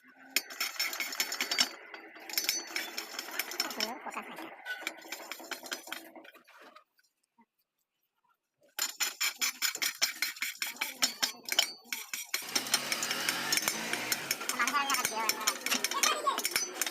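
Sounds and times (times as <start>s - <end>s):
metallic clicks and clinks: 0.4s - 6.2s, 8.8s - 16.9s.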